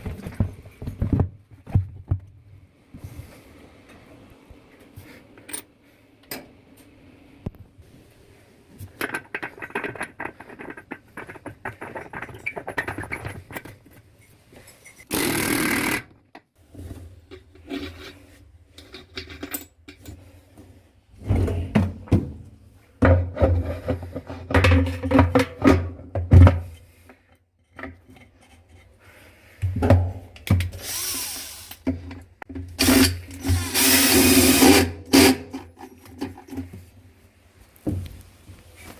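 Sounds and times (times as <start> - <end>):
tools clicking and scraping: 17.3 - 20.2.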